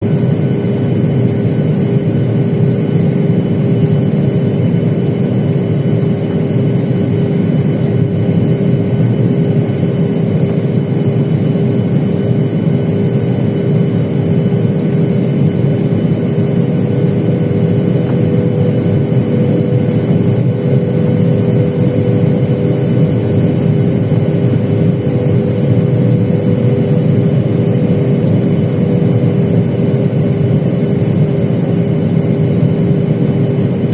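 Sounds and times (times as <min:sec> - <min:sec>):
aircraft cabin engine roar: 0:00.0 - 0:33.9.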